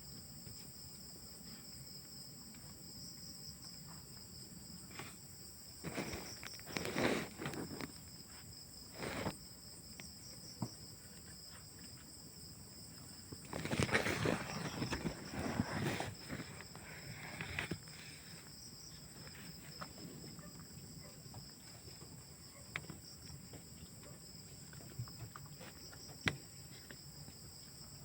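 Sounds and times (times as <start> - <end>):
insects droning in chorus: 0.0 - 28.0
scuffing or rustling noises: 5.8 - 9.4, 13.3 - 22.3.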